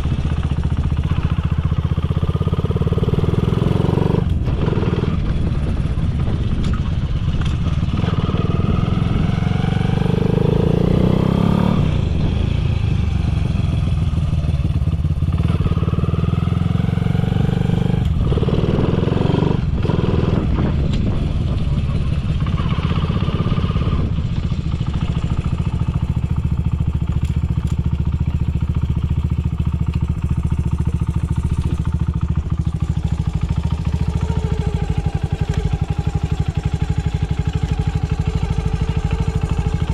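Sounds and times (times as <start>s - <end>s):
motorcycle engine idling: 0.0s - 10.6s, 11.2s - 18.6s, 19.6s - 39.9s.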